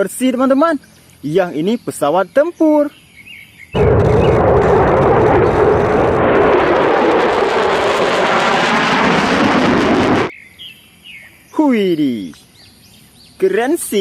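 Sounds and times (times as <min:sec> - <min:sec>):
jet engine noise: 0:03.8 - 0:10.3.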